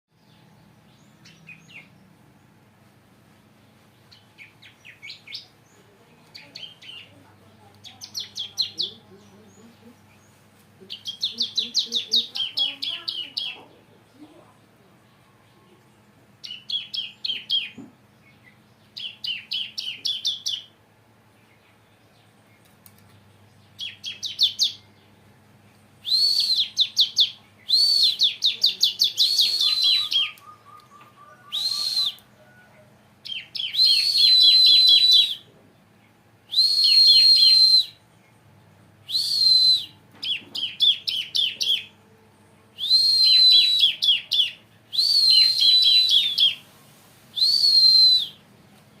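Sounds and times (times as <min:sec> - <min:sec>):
bird chirping rapidly: 0:07.8 - 0:10.3, 0:10.9 - 0:13.6, 0:16.4 - 0:20.7, 0:23.5 - 0:25.2, 0:26.0 - 0:35.4, 0:39.1 - 0:41.9, 0:42.8 - 0:46.6.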